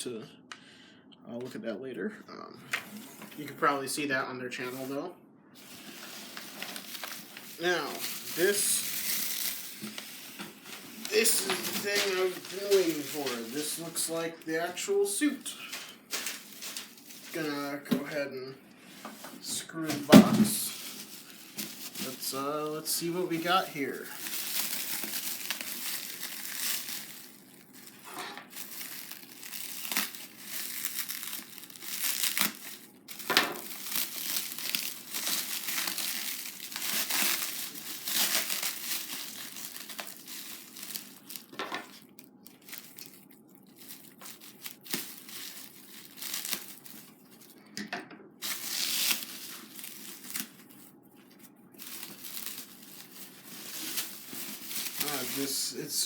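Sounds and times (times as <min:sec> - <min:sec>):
plastic wrap crinkling and tearing: 0:05.6 - 0:18.2, 0:18.8 - 0:47.6, 0:48.4 - 0:56.0.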